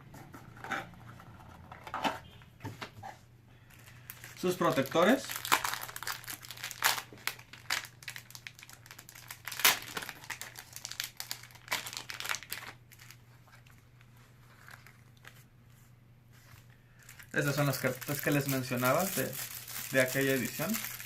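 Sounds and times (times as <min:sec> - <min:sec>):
plastic packaging crinkling: 0:03.7 - 0:15.5, 0:16.9 - 0:21.0.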